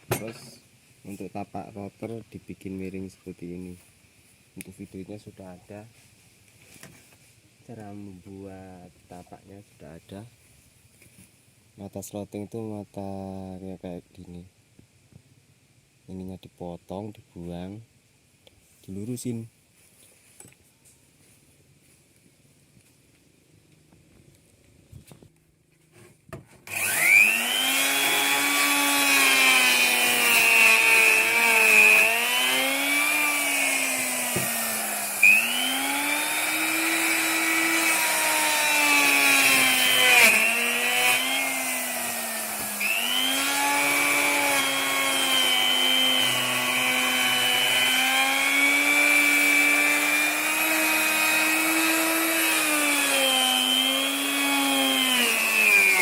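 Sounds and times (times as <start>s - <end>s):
wood router whining: 26.7s - 56.0s.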